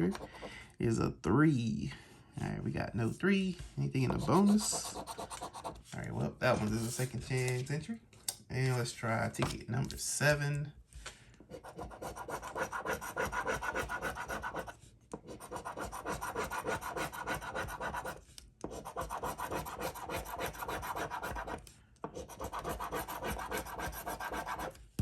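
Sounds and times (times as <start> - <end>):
lottery ticket being scratched: 4.0 - 5.9, 11.6 - 21.6, 22.2 - 24.7.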